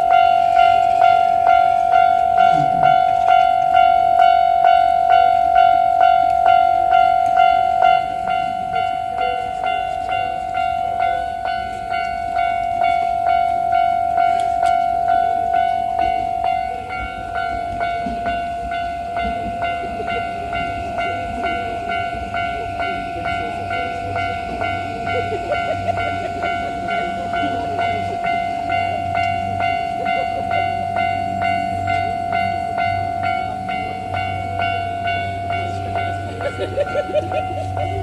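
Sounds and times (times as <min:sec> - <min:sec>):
electric train rumbling: 0:00.0 - 0:38.0
level-crossing warning bell ringing: 0:00.0 - 0:38.0.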